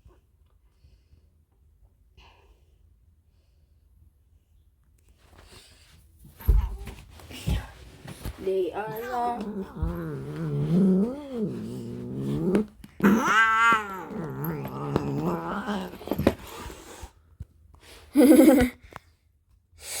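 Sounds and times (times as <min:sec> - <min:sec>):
cat growling and yowling: 0:08.8 - 0:16.5
cat hissing: 0:09.0 - 0:17.1.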